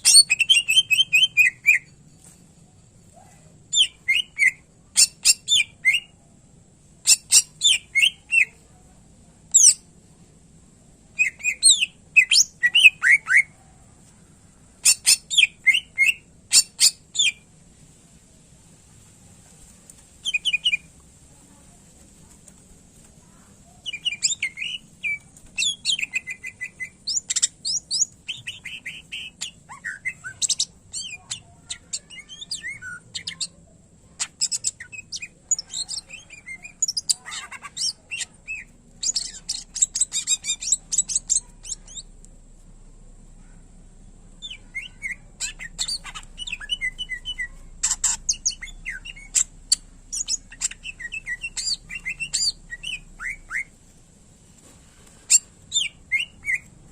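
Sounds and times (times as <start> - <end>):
bird singing chirps and trills: 0.1 - 2.0, 3.7 - 6.1, 7.1 - 8.6, 23.7 - 33.6, 44.4 - 53.7, 55.7 - 56.7.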